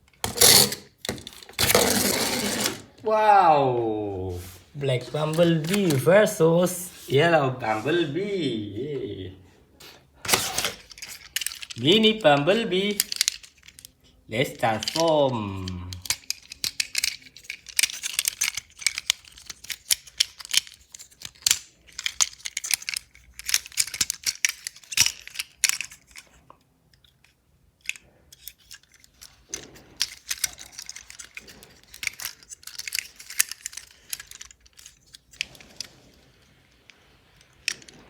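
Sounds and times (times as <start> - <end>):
plastic toy parts clicking: 0.0 - 2.9, 5.0 - 6.8, 10.2 - 38.0.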